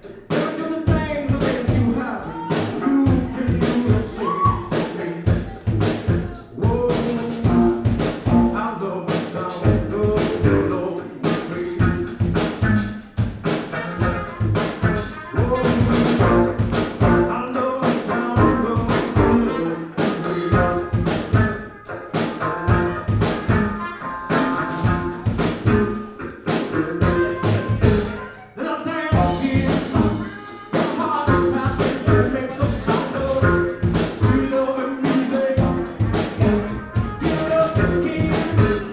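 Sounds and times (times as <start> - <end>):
drum kit beat: 0.0 - 28.4, 29.1 - 38.9
live band music: 0.0 - 38.9.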